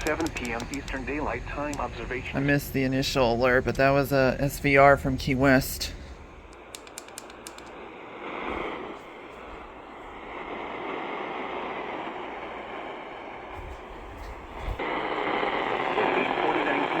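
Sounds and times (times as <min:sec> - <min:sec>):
radio static hiss: 0:00.0 - 0:17.0.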